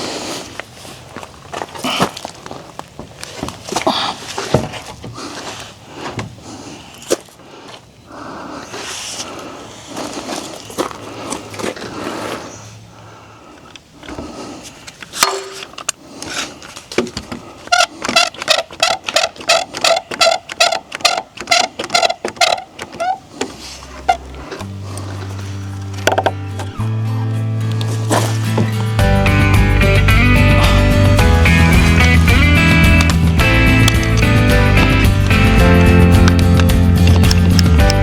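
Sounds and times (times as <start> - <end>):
wooden board scraping and knocking: 4.4 - 5.2, 16.9 - 26.8, 27.8 - 29.0.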